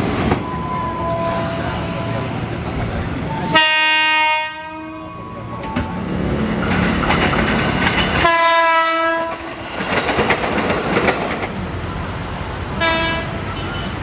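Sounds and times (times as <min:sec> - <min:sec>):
train running noise and wheel clatter: 0:00.0 - 0:14.0
electric train horn: 0:03.4 - 0:05.4, 0:08.2 - 0:09.5, 0:12.8 - 0:14.0.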